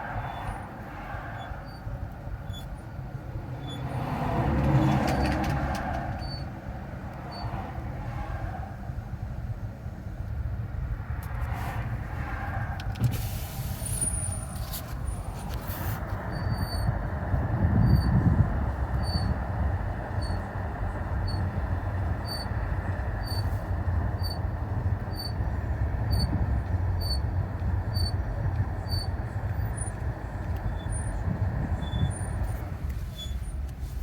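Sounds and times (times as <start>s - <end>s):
car running noise: 0.0s - 34.0s
high-pitched squeak: 31.8s - 32.5s, 33.1s - 33.6s.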